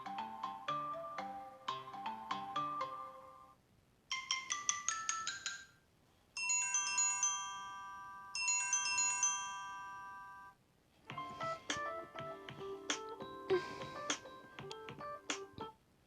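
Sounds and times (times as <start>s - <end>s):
phone ringtone tune: 6.4s - 15.7s.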